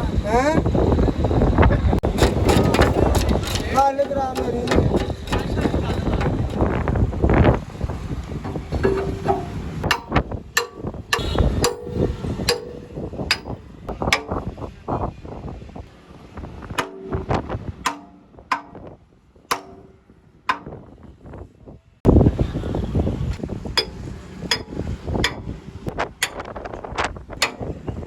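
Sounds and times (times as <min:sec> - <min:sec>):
dense metallic clatter: 0:02.0 - 0:14.6, 0:16.7 - 0:21.1
hammer striking steel: 0:02.1 - 0:06.9, 0:08.4 - 0:14.6, 0:16.7 - 0:20.9, 0:23.8 - 0:25.6, 0:26.2 - 0:26.6, 0:27.4 - 0:28.0.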